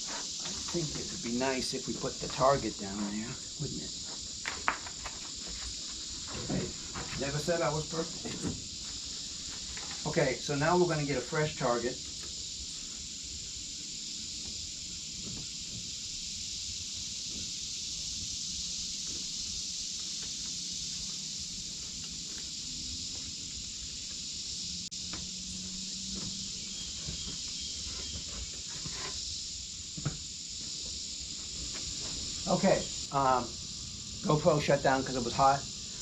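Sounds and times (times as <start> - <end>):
crickets chirping: 0.0 - 36.0
faint footsteps: 4.0 - 7.4, 29.9 - 32.9.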